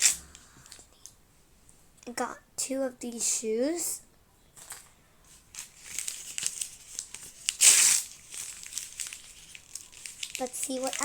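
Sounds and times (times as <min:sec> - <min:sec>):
plastic wrapping crinkling: 0:04.6 - 0:11.0
plastic ripping: 0:05.6 - 0:11.0.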